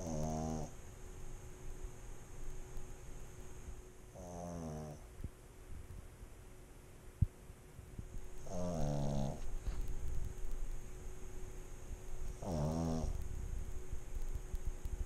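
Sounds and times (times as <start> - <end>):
dog snoring: 0.0 - 0.8, 4.1 - 5.1, 8.4 - 9.9, 12.3 - 13.2.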